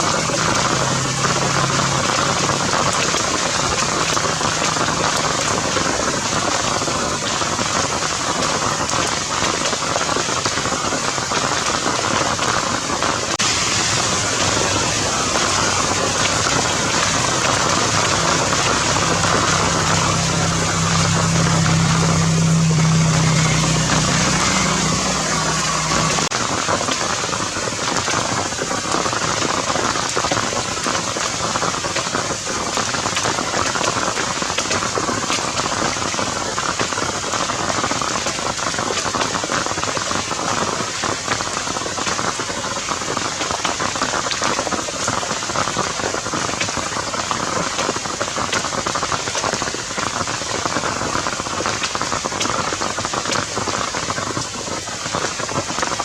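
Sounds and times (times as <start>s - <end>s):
rain pattering on surfaces: 0.0s - 56.0s
low hum: 13.5s - 26.4s.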